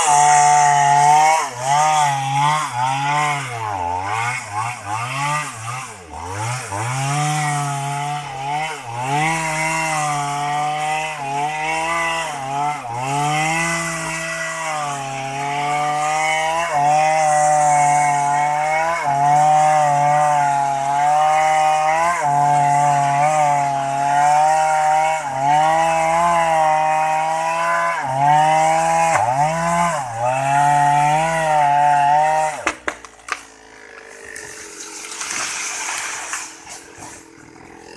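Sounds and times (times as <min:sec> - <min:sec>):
chainsaw cutting into tree: 0:00.0 - 0:37.9
wood cracking: 0:28.9 - 0:29.8, 0:32.6 - 0:37.8.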